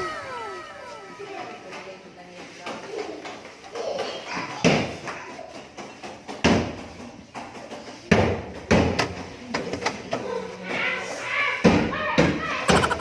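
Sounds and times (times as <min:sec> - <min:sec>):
sharp knocks and thumps: 0:12.7 - 0:13.0.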